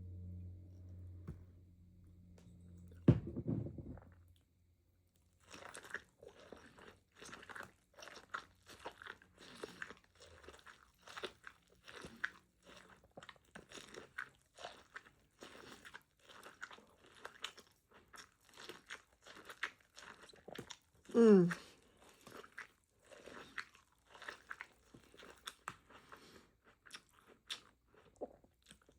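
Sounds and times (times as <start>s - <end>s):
loud thump: 3.0s - 4.0s.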